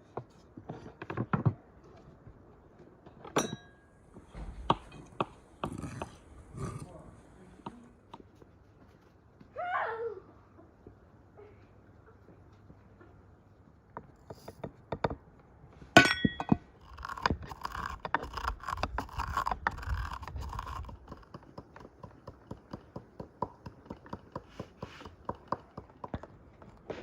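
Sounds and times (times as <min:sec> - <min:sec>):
rustling and scraping: 0:00.0 - 0:03.4, 0:08.2 - 0:09.5
dishes and utensils clinking: 0:03.3 - 0:03.9, 0:16.0 - 0:16.7
loud ringing clink: 0:03.4 - 0:03.9, 0:16.0 - 0:16.6.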